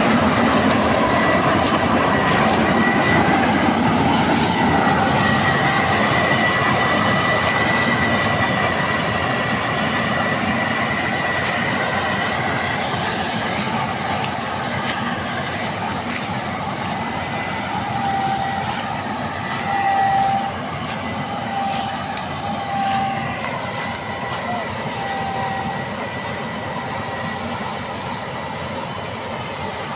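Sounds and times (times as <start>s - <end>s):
combine harvester running: 0.0s - 29.9s.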